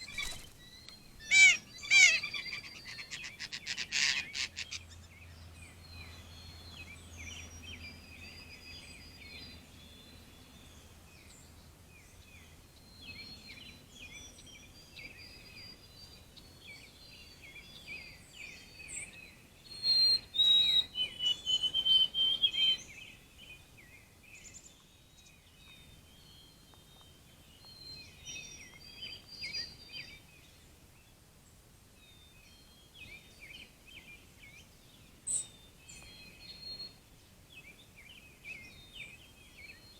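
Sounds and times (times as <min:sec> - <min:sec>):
birds chirping and singing: 0:00.0 - 0:07.7.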